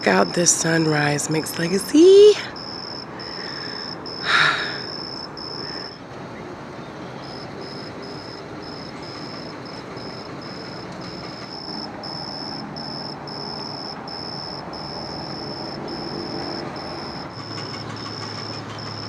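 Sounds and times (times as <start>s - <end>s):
crickets chirping: 0.0s - 19.0s
car on the road: 11.8s - 19.0s.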